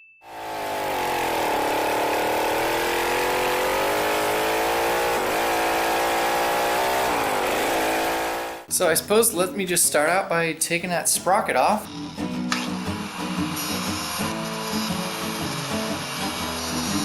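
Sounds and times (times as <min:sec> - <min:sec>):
small gas engine running: 0:00.3 - 0:08.7, 0:11.9 - 0:17.0.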